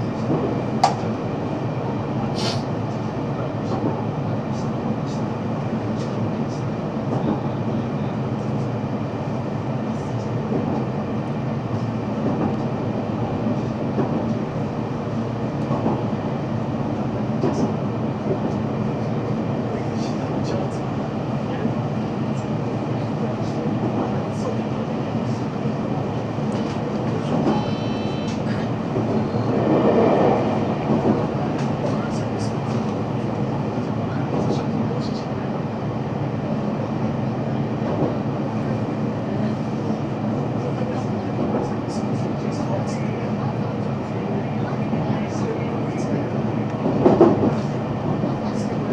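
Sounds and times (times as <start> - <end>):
train wheels rumbling on rail: 0.0 - 48.9
rail clicks: 26.5 - 33.0
brief high tone: 27.6 - 28.5.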